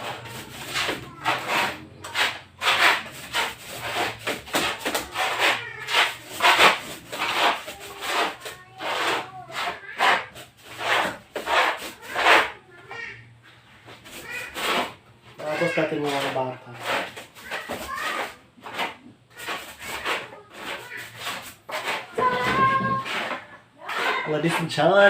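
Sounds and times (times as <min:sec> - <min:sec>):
hand rubbing on wall: 0:00.0 - 0:12.6.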